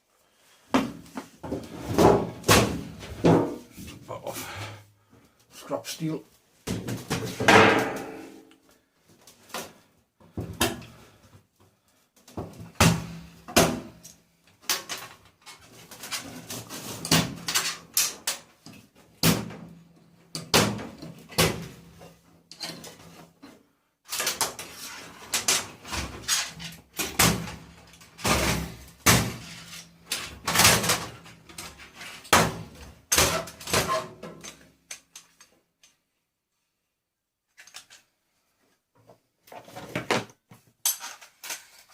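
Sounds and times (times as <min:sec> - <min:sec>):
sheet metal parts clanking: 0:07.3 - 0:08.4.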